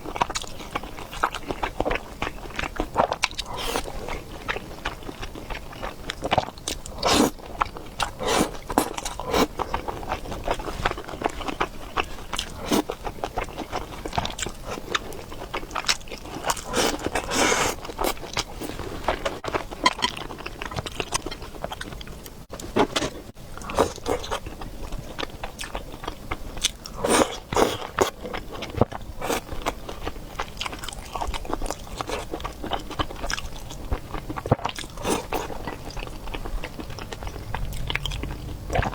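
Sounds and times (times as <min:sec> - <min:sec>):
person chewing and biting food: 0:25.2 - 0:38.9.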